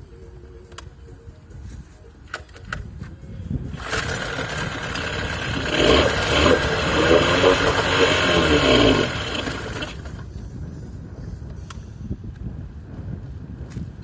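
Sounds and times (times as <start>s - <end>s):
outboard motor running unevenly: 3.8s - 10.3s.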